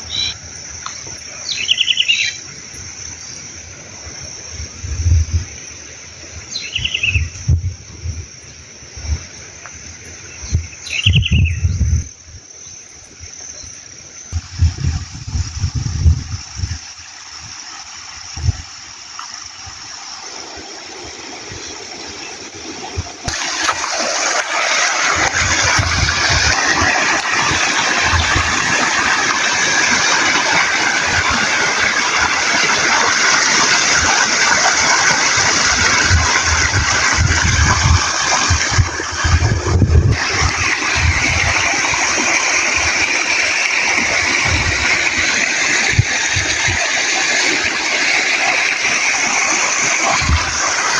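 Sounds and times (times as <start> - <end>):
river water rushing and splashing: 20.0 - 50.9.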